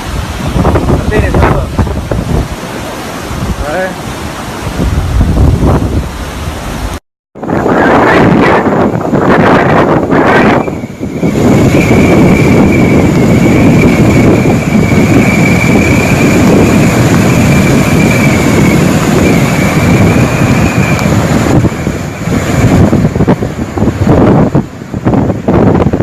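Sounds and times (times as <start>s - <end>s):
strong wind blasting microphone: 0.0s - 26.0s
thin high whistle: 10.3s - 21.1s.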